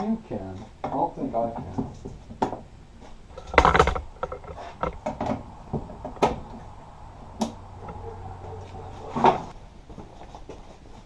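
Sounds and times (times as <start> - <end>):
rattling clunk: 3.3 - 6.8.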